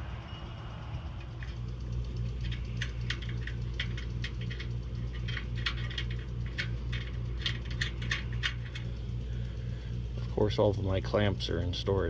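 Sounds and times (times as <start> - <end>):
steady low hum: 0.0 - 12.0
metal hardware clinking: 1.1 - 9.1.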